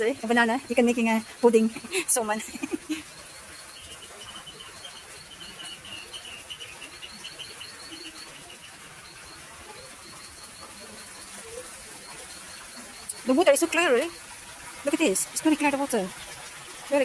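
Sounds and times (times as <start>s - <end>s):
small bird chirping: 2.6s - 11.6s.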